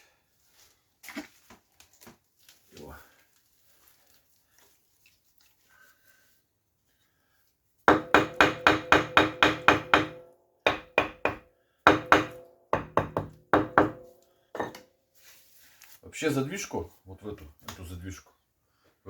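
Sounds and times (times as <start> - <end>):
brick tapped into mortar: 14.6 - 14.8.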